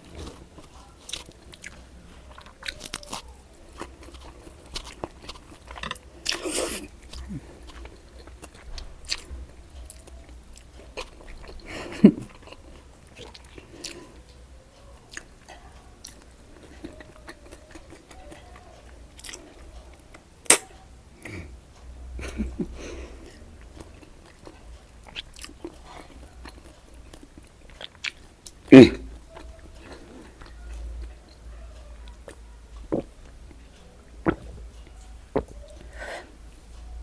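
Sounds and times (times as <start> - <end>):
person chewing food: 0.0 - 37.0
mouth smacks: 0.1 - 9.3, 27.3 - 31.4, 32.0 - 33.4, 34.2 - 36.2.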